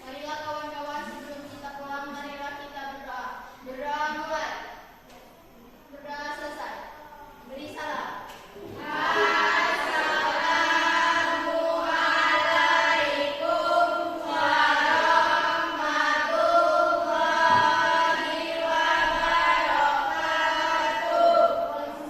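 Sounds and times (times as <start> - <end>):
slow sung chant: 8.6 - 22.0.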